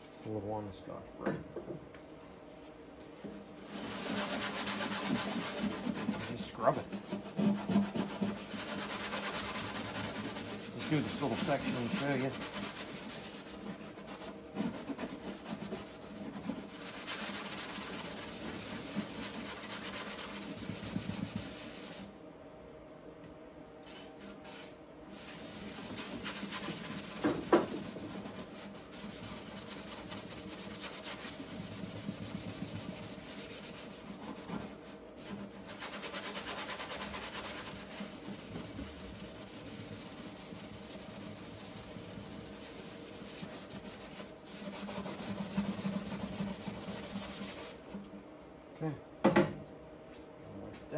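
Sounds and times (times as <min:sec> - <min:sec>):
pad scrubbing metal panel: 0:03.6 - 0:20.9, 0:25.2 - 0:47.9.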